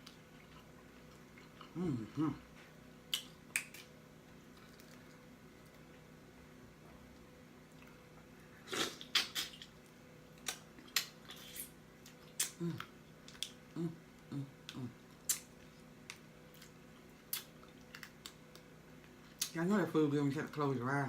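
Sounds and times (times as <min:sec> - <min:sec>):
wet lip smacks and chewing: 0:10.4 - 0:13.6, 0:14.6 - 0:18.7.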